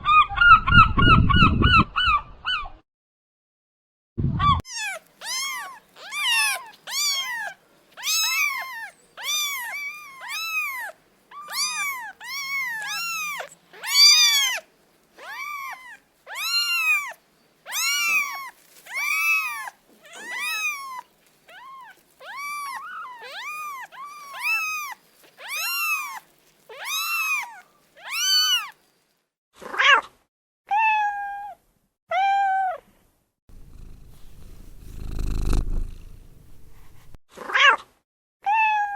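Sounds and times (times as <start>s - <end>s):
cat meowing: 4.7s - 28.8s.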